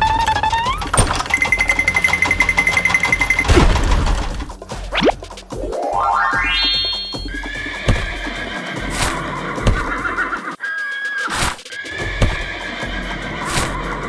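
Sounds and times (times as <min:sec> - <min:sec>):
background music: 0:00.0 - 0:14.0
rising run of notes: 0:05.0 - 0:07.5.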